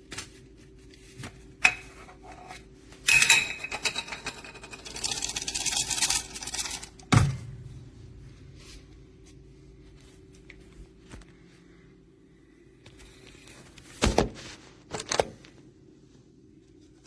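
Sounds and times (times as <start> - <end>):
coffee grinder rasping: 4.5 - 7.0.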